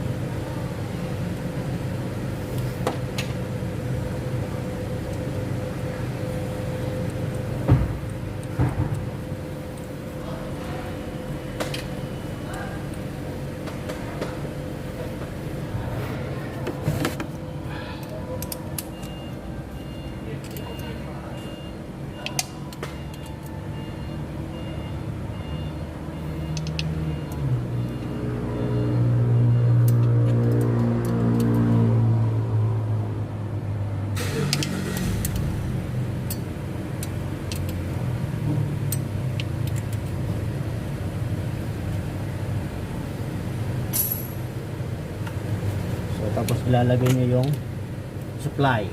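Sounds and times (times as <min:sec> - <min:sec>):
low mechanical hum: 0:00.0 - 0:48.9.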